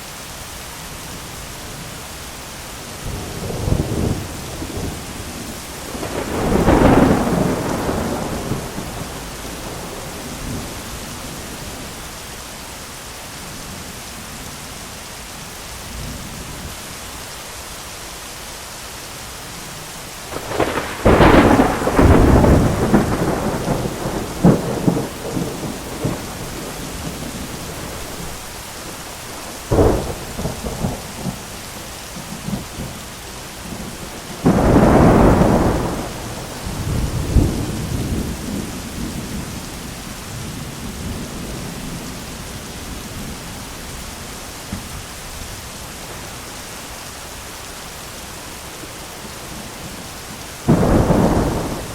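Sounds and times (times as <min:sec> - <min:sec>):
heavy rain: 0:00.0 - 0:51.9
thunder rumbling: 0:03.0 - 0:12.0, 0:20.2 - 0:46.3, 0:49.2 - 0:51.9.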